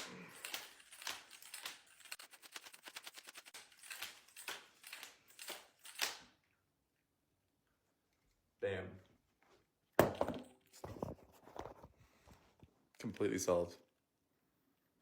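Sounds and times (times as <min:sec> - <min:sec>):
puzzle cube clicking and clacking: 0:00.0 - 0:06.3.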